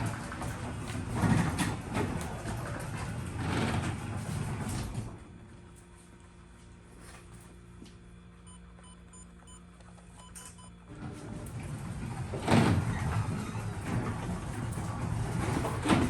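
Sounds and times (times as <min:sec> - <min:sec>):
garage door opener motor: 0:00.0 - 0:16.0
short electronic beeps: 0:10.2 - 0:10.8.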